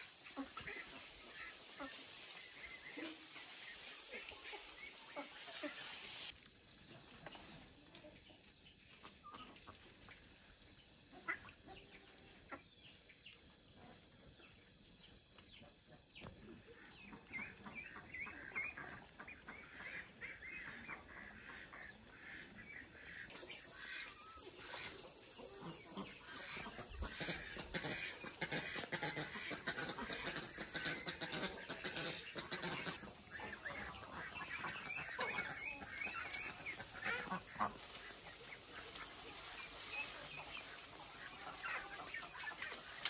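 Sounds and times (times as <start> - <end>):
high insect drone: 0.0 - 43.0.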